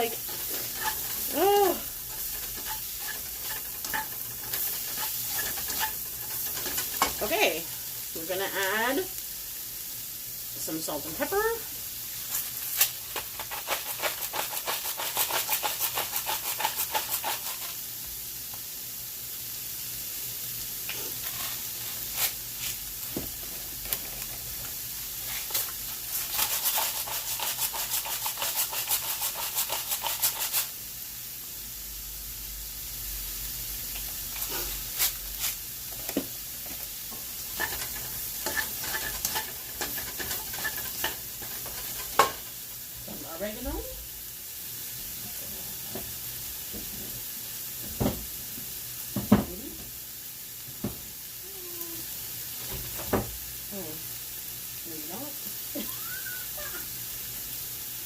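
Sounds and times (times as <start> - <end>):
spoon stirring and scraping pot: 0.0 - 7.5, 12.8 - 17.8, 20.9 - 22.8, 25.2 - 30.7, 34.4 - 42.4
vegetables sizzling in a pot: 0.0 - 58.0.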